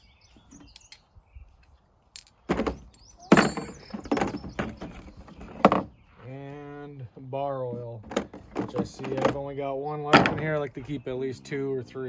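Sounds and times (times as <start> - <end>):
tools rattling in toolbox: 2.2 - 5.8, 8.0 - 9.5.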